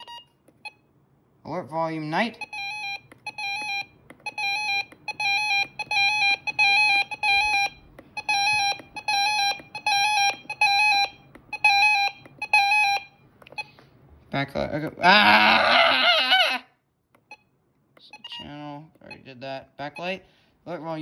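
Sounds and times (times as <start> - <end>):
rapid high alert beeps: 0.0 - 0.9, 2.0 - 13.8, 17.3 - 20.5.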